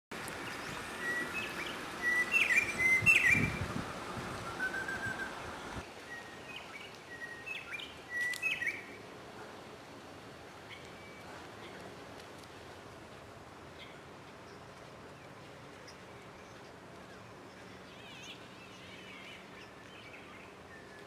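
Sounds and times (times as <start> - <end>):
bird singing clear whistles: 1.0 - 3.7, 4.4 - 5.4, 6.1 - 8.9.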